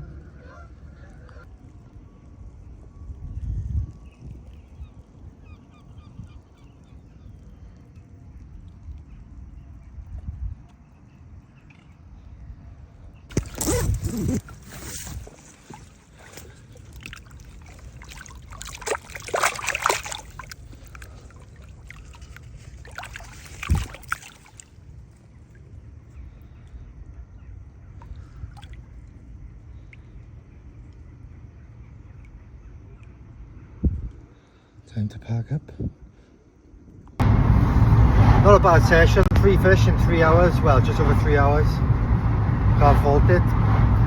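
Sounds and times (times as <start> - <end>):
water splashing and sloshing: 0.5 - 12.3, 13.3 - 26.8, 27.8 - 31.1.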